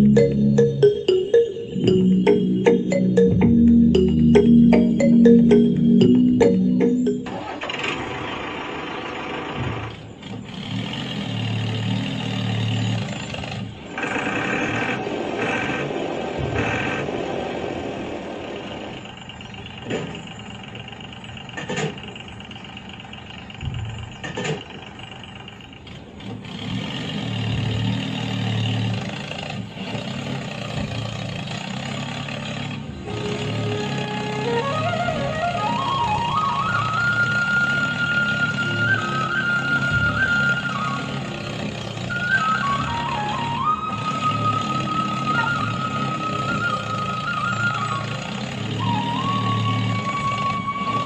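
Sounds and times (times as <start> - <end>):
mini tractor engine running: 5.2 - 35.0.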